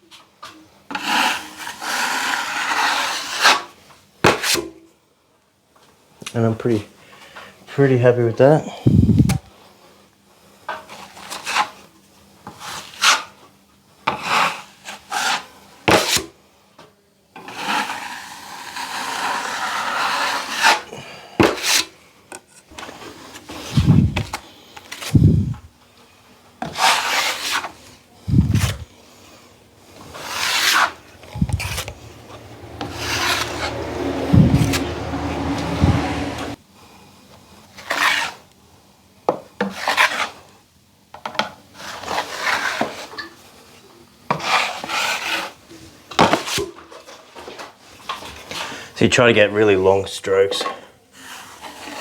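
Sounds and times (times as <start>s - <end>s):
drywall knife scraping: 0.9s - 3.7s, 14.1s - 16.3s, 17.4s - 21.9s, 23.3s - 25.7s, 26.6s - 28.9s, 29.8s - 36.6s, 37.8s - 38.4s, 41.8s - 43.1s, 44.3s - 45.6s, 51.2s - 52.0s.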